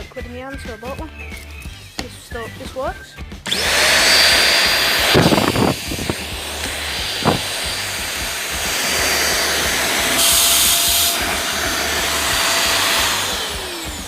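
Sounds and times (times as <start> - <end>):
stick vacuum cleaner running: 3.4 - 14.0.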